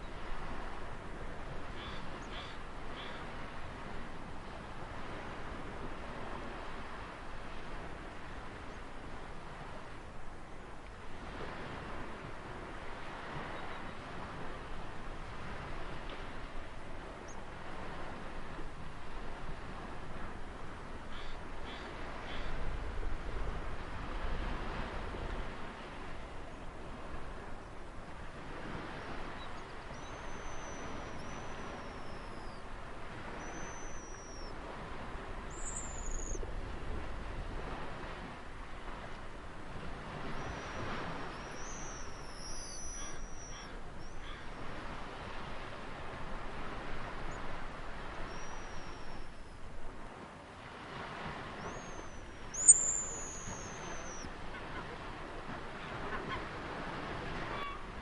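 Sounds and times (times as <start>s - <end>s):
sea waves washing on shore: 0.0s - 58.0s
bird whistled calls: 29.9s - 32.6s, 33.4s - 34.5s, 35.5s - 36.4s, 40.4s - 44.3s, 48.3s - 49.2s, 51.6s - 54.3s.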